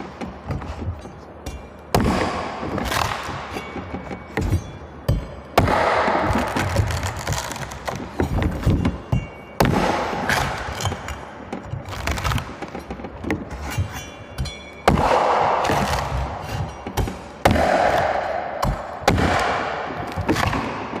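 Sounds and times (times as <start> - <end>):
blade chopping coconuts: 1.5 - 12.7, 14.4 - 21.0.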